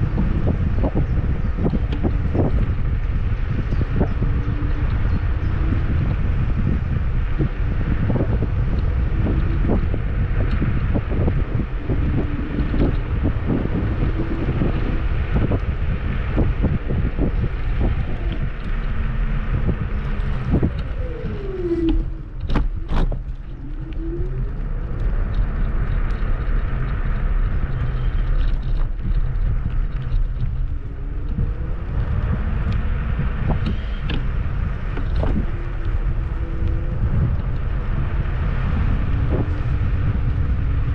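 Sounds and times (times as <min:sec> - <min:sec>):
wind on microphone: 0:00.0 - 0:40.9
electric motor whine: 0:03.4 - 0:25.8.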